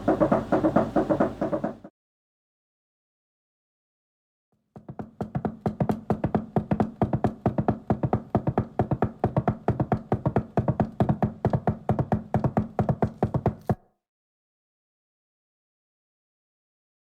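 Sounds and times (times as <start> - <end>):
steady low hum: 0.0 - 1.8
rapid sharp percussive knocks: 0.0 - 1.9, 4.8 - 13.8.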